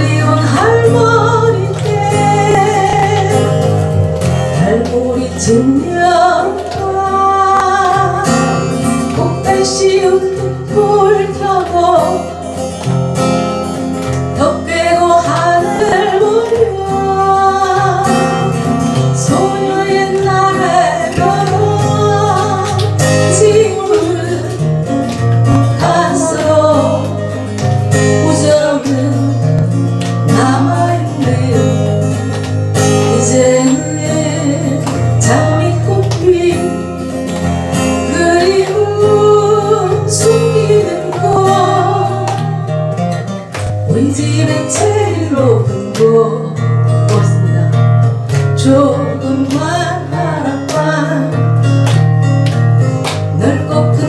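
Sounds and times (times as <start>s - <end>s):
acoustic guitar: 0.0s - 54.0s
person singing: 4.6s - 12.5s, 14.4s - 24.8s, 25.5s - 32.1s, 33.0s - 37.0s, 38.0s - 43.0s, 53.4s - 54.0s.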